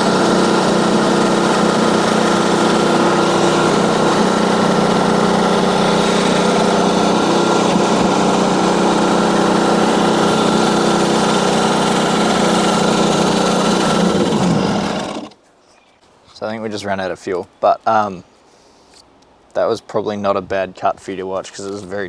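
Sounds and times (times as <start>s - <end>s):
small petrol engine running: 0.0s - 15.4s.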